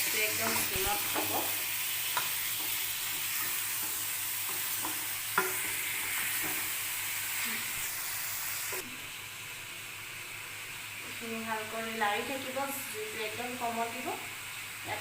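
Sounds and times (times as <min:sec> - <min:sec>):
chicken sizzling in hot fat: 0:00.0 - 0:15.0
spatula knocking and scraping pan: 0:00.4 - 0:06.8.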